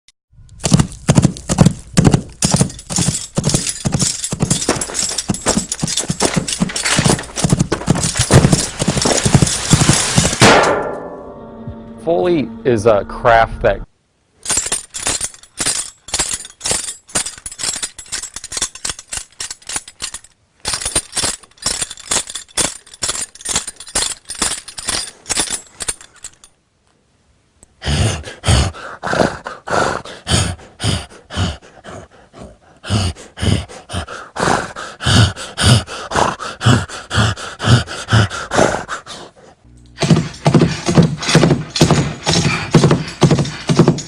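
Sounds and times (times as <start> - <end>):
fast sharp hits: 0.6 - 12.4.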